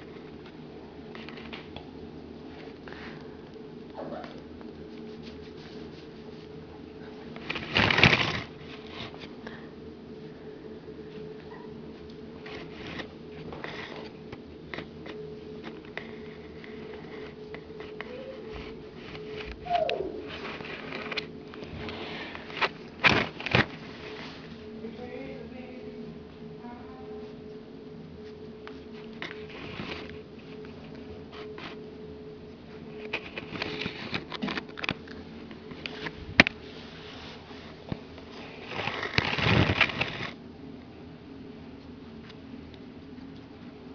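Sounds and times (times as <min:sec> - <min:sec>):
low hum: 0:00.0 - 0:43.9
rustling scuffle: 0:17.9 - 0:25.0
faint squeak: 0:19.6 - 0:20.3.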